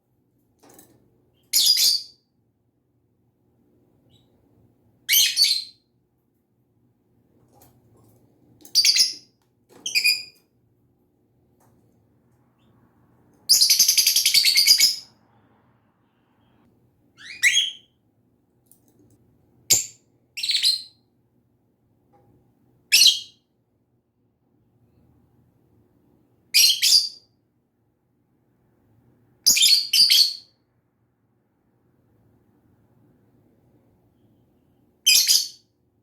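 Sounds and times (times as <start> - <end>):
lovebird chirps: 1.4 - 2.2, 5.1 - 5.8, 8.7 - 10.4, 13.5 - 15.2, 17.2 - 17.9, 19.7 - 21.0, 35.1 - 35.6.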